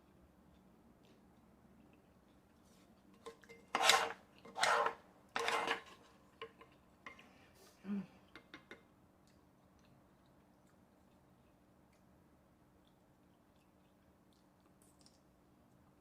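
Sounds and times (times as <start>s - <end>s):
utensils scraping a dish: 3.2s - 6.1s.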